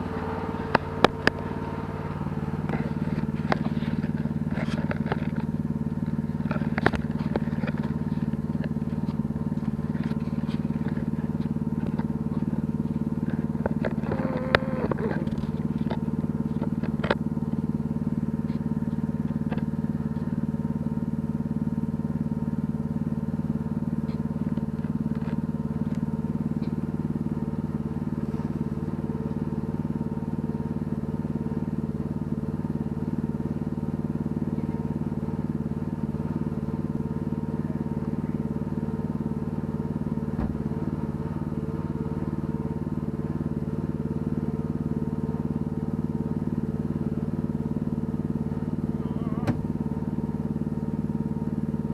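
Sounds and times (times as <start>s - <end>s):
wavering whine: 0.0s - 17.2s
small engine running steadily: 0.0s - 51.9s.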